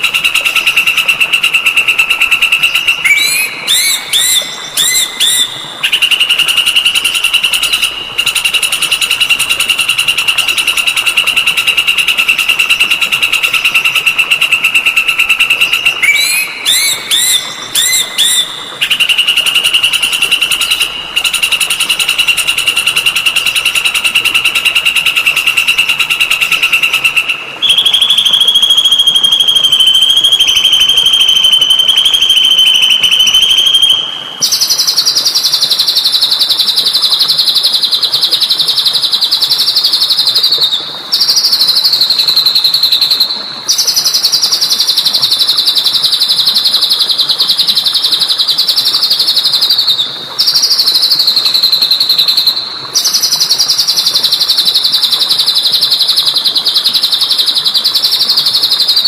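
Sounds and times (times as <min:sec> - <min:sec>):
songbird trilling: 0:00.0 - 0:09.2, 0:11.4 - 0:35.4.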